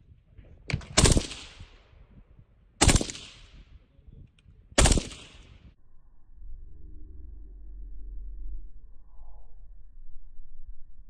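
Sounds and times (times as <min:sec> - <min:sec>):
suppressed rifle bursts: 0:00.7 - 0:01.8, 0:02.8 - 0:03.6, 0:04.8 - 0:05.6.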